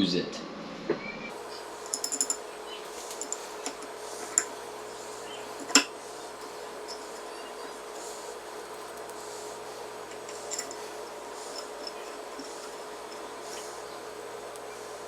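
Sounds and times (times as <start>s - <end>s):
faint steady hum: 0.0s - 15.0s
metal hardware clinking: 1.8s - 4.6s, 5.5s - 7.3s, 10.0s - 14.0s.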